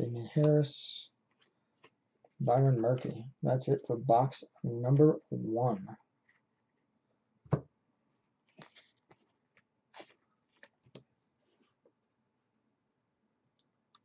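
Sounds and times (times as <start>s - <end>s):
cards and packaging rustling: 8.4s - 11.0s.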